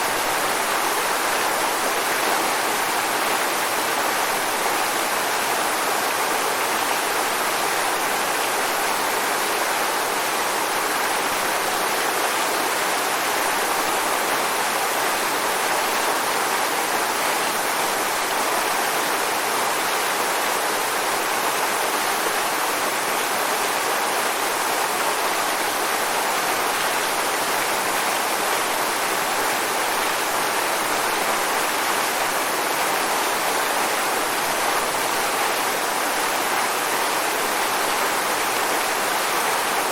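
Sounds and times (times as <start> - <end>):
waterfall rushing: 0.0 - 39.9.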